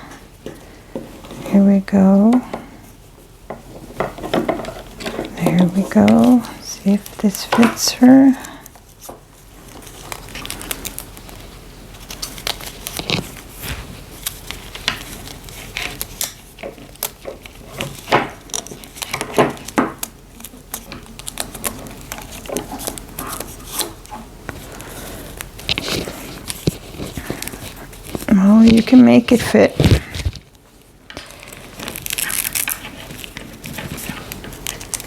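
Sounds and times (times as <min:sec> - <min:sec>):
light crinkling: 0:03.7 - 0:35.0
cloth rustling: 0:04.9 - 0:16.5, 0:20.4 - 0:35.0.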